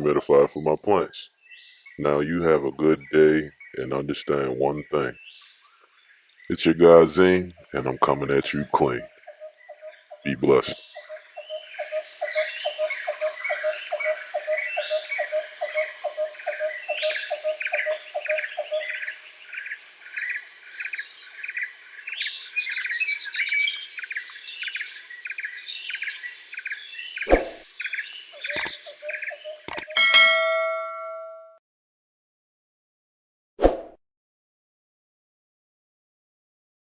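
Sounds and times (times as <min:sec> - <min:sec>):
birds chirping and singing: 0:00.0 - 0:31.1
low repeating bird call: 0:06.5 - 0:19.3, 0:27.2 - 0:31.2.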